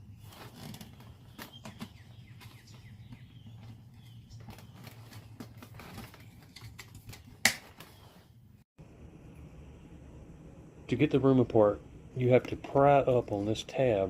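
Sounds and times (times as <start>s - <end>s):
sharp loud snap: 7.4s - 7.9s.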